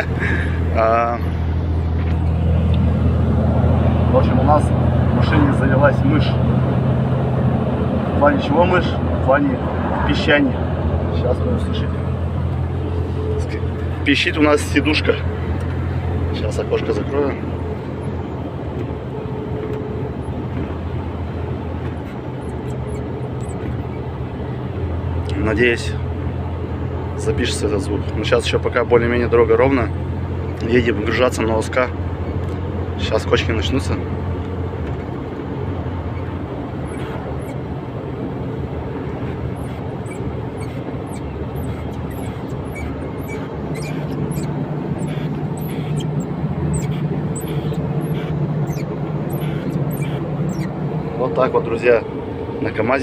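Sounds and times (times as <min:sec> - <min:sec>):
truck engine and road rumble: 0:00.0 - 0:53.0
seat squeaking: 0:18.8 - 0:24.3, 0:34.9 - 0:50.8.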